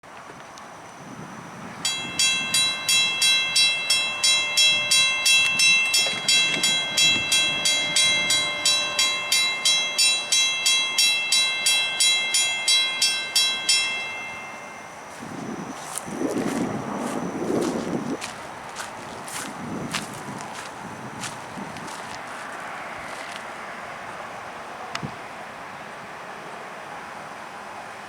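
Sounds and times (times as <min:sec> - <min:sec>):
railroad crossing bell ringing: 0:00.7 - 0:21.4.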